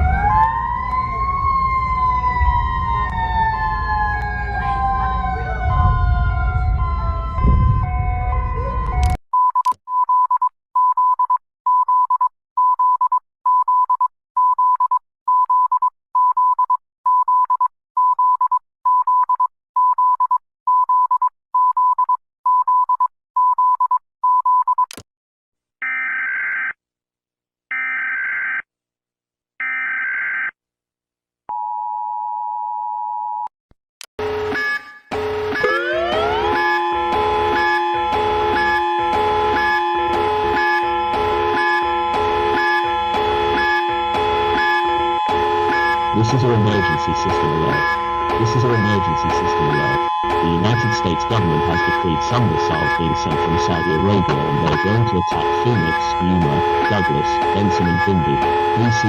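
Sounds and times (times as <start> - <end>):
siren wailing: 0.0 - 9.2, 34.2 - 59.0
loud low rumble: 4.4 - 8.7
steady tone: 35.6 - 59.0
buzzy digital tone bursts: 45.8 - 59.0
high beep: 45.8 - 59.0.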